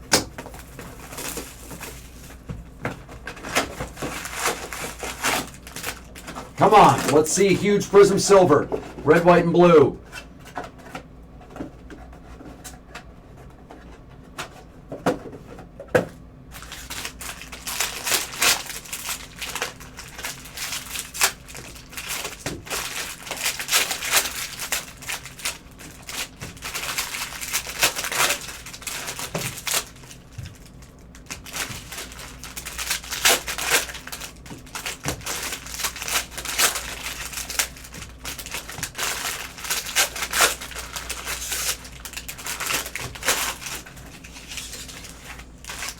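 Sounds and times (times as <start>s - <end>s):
plastic wrapper crinkling: 3.5s - 6.5s, 16.6s - 45.9s.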